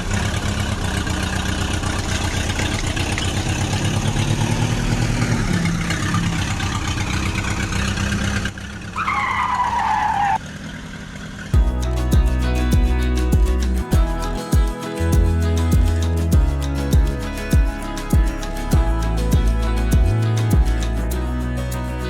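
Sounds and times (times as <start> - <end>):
tractor engine running: 0.0 - 22.0.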